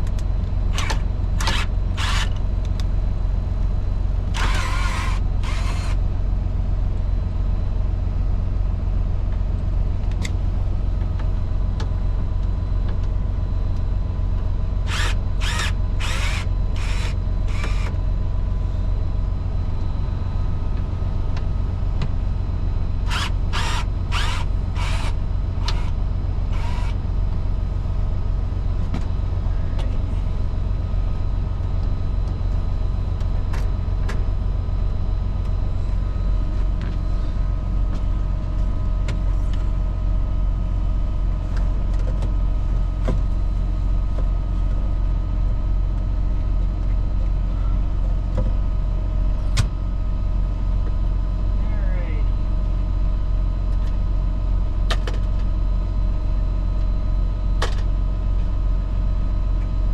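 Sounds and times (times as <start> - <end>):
power drill bursts: 0.7 - 2.4, 4.3 - 6.0, 14.9 - 17.9, 23.1 - 25.9, 26.5 - 27.0.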